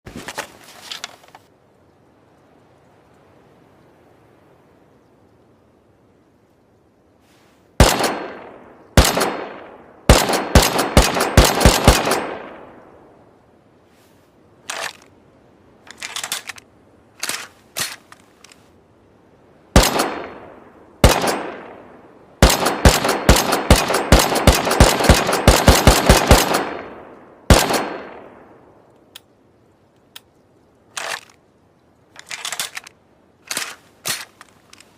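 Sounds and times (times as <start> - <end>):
rifle gunshots: 7.8 - 12.6, 19.8 - 28.5
quiet clicks: 28.9 - 31.5, 32.2 - 34.9.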